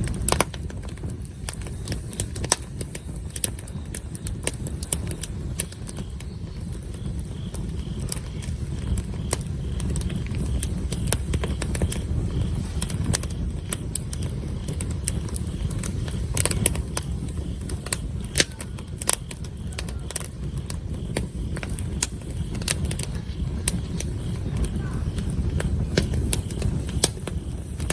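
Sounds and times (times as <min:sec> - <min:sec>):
campfire crackling and popping: 0:00.0 - 0:27.9
low rumble: 0:00.0 - 0:27.9.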